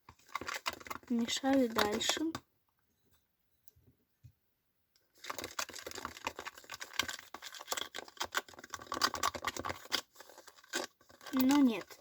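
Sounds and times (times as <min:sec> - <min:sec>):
stick stirring paste in container: 0:00.0 - 0:02.4, 0:05.2 - 0:12.0.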